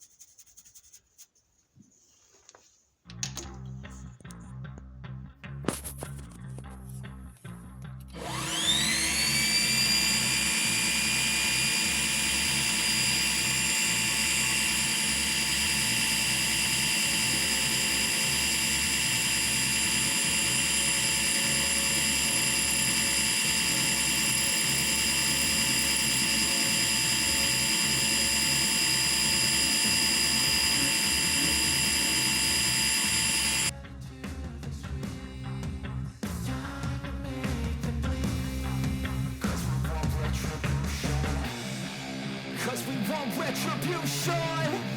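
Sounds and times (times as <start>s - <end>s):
machine tool motor whining: 8.1s - 33.7s.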